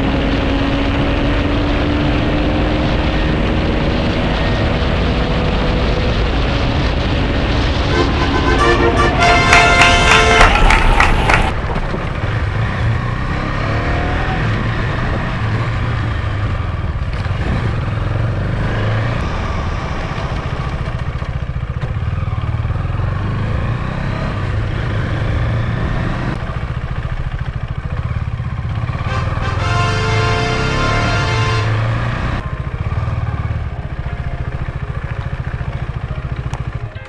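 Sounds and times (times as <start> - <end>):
wind and road noise: 0.0 - 37.0
music: 7.8 - 11.5
motorcycle engine revving: 12.6 - 36.8.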